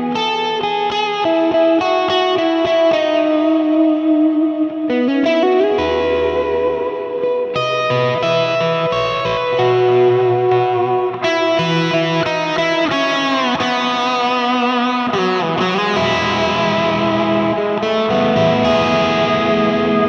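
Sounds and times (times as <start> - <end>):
ambient electric guitar with delay: 0.0 - 20.0.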